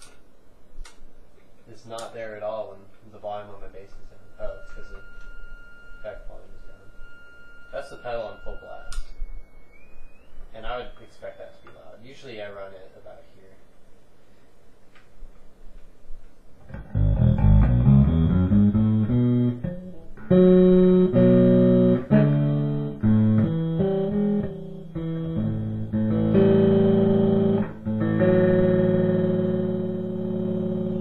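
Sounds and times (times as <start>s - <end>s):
distorted electric bass notes: 16.6s - 31.0s.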